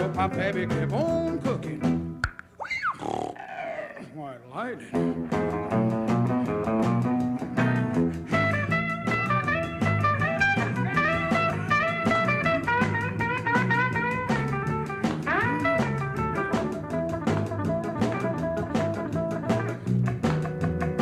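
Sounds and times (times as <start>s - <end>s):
drums keeping a beat: 0.0s - 2.5s, 5.0s - 21.0s
bass: 0.0s - 3.0s, 4.9s - 21.0s
lead guitar solo: 4.9s - 21.0s.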